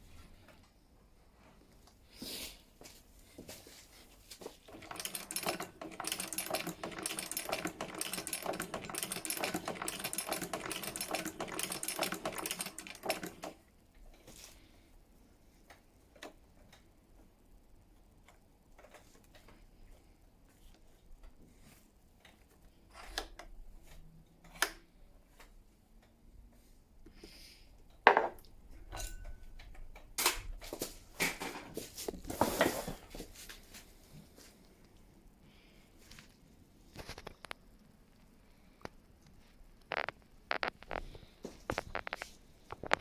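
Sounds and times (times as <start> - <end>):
sewing machine stitching: 4.6 - 13.6.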